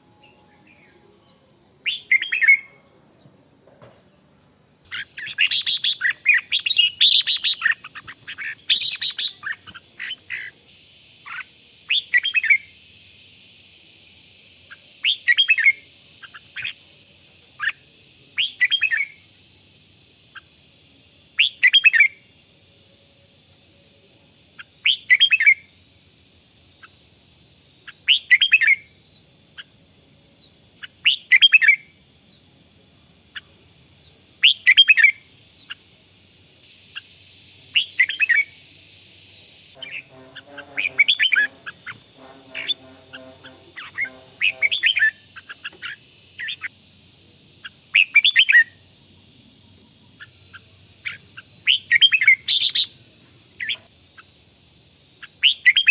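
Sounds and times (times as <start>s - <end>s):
bulbul singing: 0.2s - 2.8s, 4.8s - 12.8s, 14.6s - 19.3s, 26.8s - 32.4s, 33.3s - 46.8s, 47.6s - 48.9s, 50.0s - 53.0s
low chattering: 39.8s - 45.1s.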